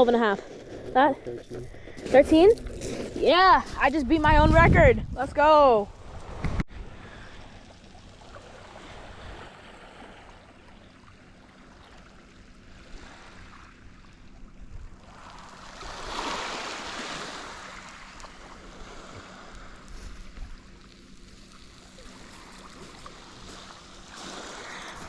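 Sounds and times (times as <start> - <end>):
waves washing over rocks: 15.0 - 25.0.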